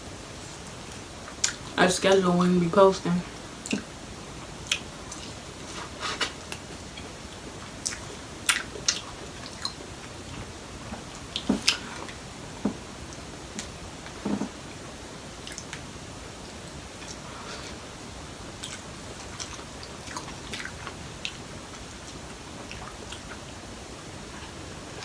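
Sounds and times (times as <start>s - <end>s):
background hiss: 0.0s - 25.0s
chewing and wet squishing: 0.9s - 1.8s, 4.6s - 12.3s, 15.4s - 17.9s, 18.5s - 23.6s.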